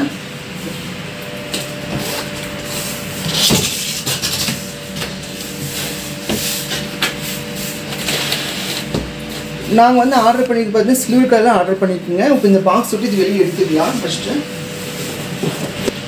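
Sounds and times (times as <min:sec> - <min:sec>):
cardboard box rubbing and scraping: 0:12.2 - 0:16.0.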